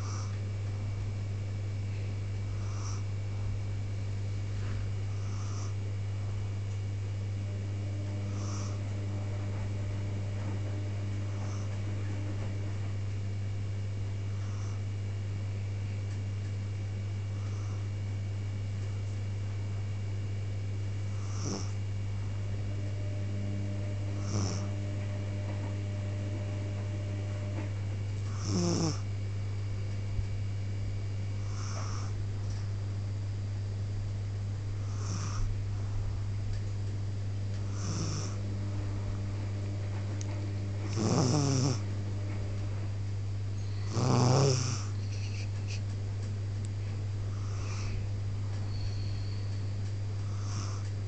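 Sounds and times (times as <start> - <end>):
person snoring: 0.0 - 0.4, 2.5 - 3.1, 5.1 - 5.8, 8.1 - 8.9, 11.2 - 11.8, 21.1 - 21.8, 23.3 - 24.8, 28.3 - 29.1, 31.4 - 32.2, 34.8 - 35.5, 37.7 - 38.5, 40.9 - 41.9, 43.7 - 45.8, 47.3 - 48.1, 50.2 - 50.9
pet snoring: 0.0 - 0.4, 2.4 - 3.2, 4.6 - 5.9, 7.4 - 12.7, 14.2 - 14.9, 17.3 - 17.9, 21.1 - 21.8, 22.7 - 29.1, 31.3 - 32.3, 34.8 - 36.0, 37.6 - 39.3, 40.0 - 42.4, 43.6 - 45.8, 47.3 - 48.1, 50.1 - 51.0
steady low hum: 0.0 - 51.0.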